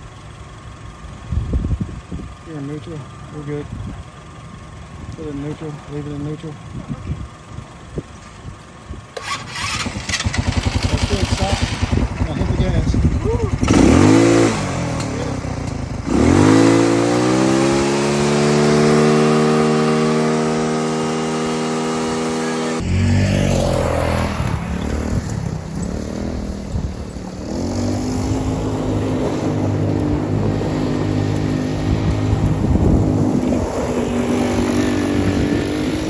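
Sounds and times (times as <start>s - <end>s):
go-kart engine revving: 0.0s - 36.0s.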